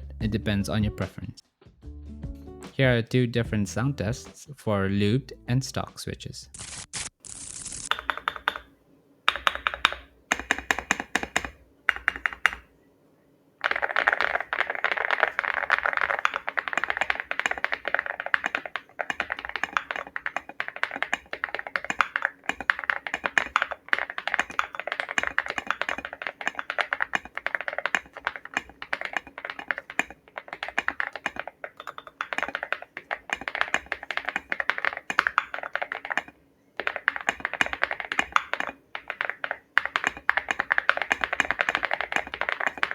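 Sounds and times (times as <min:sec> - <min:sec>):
typing on mechanical keyboard: 0:07.9 - 0:08.7, 0:09.3 - 0:12.7, 0:13.6 - 0:42.9.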